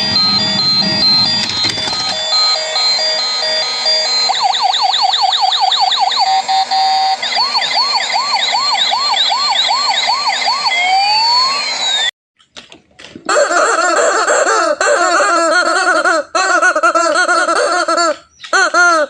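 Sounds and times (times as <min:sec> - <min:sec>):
electronic toy siren: 0:00.0 - 0:12.1.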